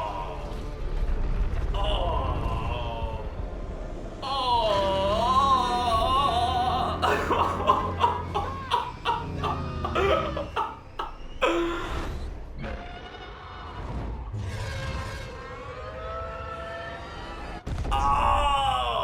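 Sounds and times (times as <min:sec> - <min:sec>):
monster cry wavering in pitch: 0:00.0 - 0:00.6, 0:01.7 - 0:03.4, 0:04.2 - 0:12.2, 0:17.9 - 0:19.0.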